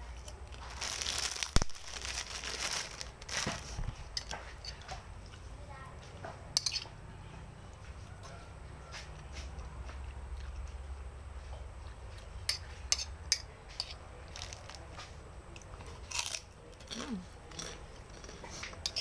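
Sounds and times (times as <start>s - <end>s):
low steady hum: 0.0s - 5.7s.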